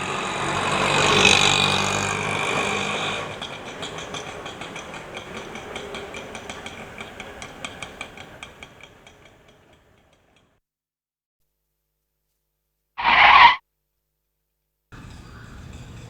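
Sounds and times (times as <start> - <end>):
rickshaw engine rattling clatter: 0.0 - 10.6, 15.0 - 16.0.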